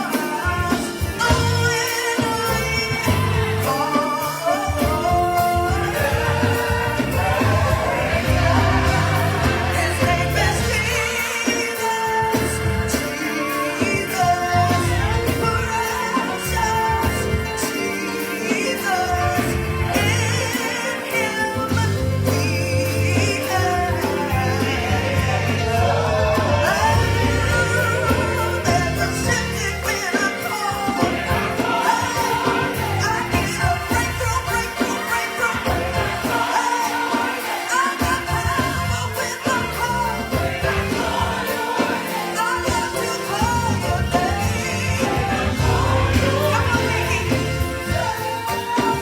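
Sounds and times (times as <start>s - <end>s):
gospel choir singing: 0.0s - 49.0s
bass line: 4.9s - 11.1s, 14.4s - 15.7s, 21.8s - 29.8s, 43.4s - 48.1s.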